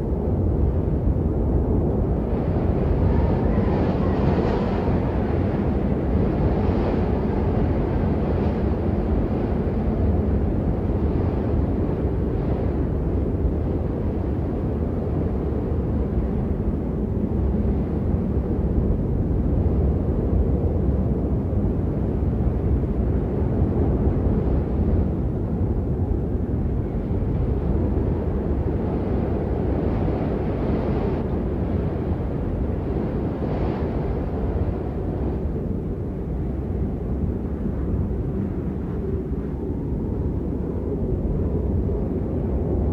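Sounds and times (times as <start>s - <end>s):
wind rumbling: 0.0s - 10.2s.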